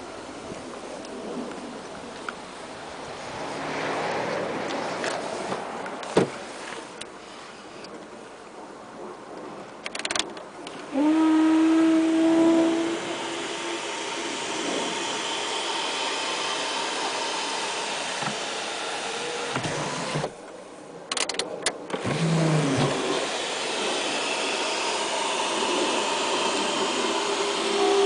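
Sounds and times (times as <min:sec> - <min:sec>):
sharp clicks: 0:09.8 - 0:10.9, 0:21.1 - 0:22.2
short low hum: 0:10.9 - 0:19.1.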